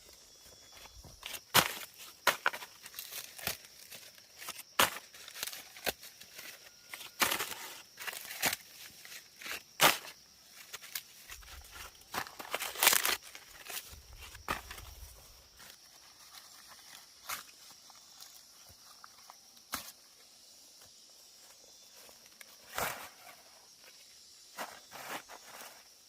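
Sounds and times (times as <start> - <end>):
dry plants snapping and tearing: 7.1 - 8.7, 9.8 - 14.8.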